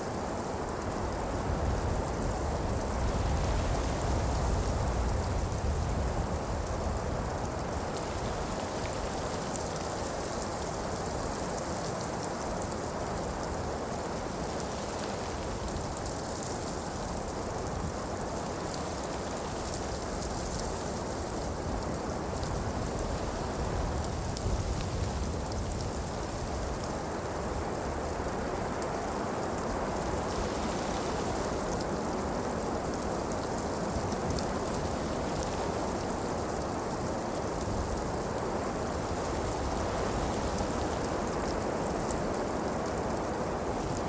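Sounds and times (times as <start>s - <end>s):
falling snow hiss: 38.0s - 44.0s.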